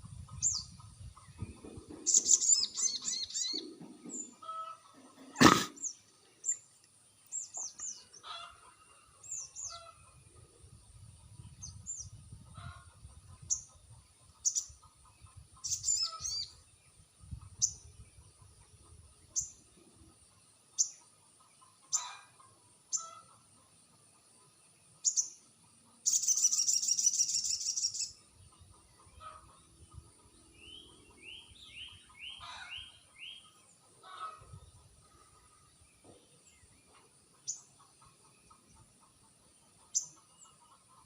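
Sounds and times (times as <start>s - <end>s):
high falling bird chirps: 26.0s - 28.2s.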